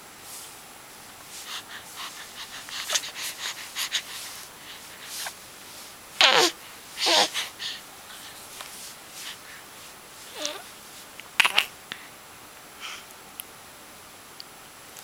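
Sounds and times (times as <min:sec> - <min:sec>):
baby squealing: 0:06.2 - 0:06.5
baby making mouth noises: 0:06.2 - 0:07.3, 0:10.3 - 0:10.7, 0:11.4 - 0:11.8.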